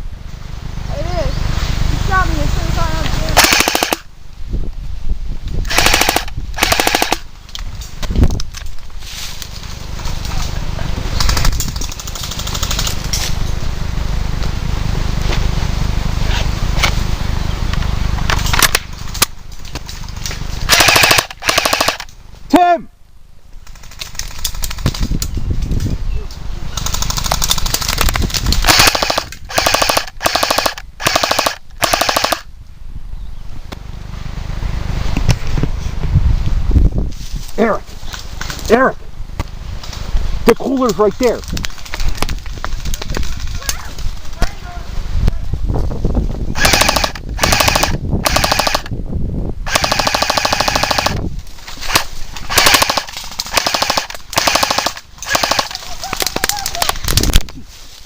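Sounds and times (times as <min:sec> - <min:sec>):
airsoft guns firing bursts: 0:03.3 - 0:04.1, 0:05.7 - 0:07.3, 0:20.7 - 0:22.1, 0:26.8 - 0:32.5, 0:46.6 - 0:48.9, 0:49.7 - 0:51.2, 0:51.9 - 0:57.0.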